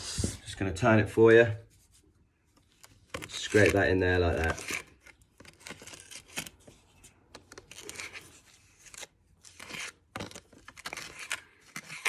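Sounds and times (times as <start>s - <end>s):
hand tool scraping grout: 3.1s - 6.6s, 7.6s - 12.0s.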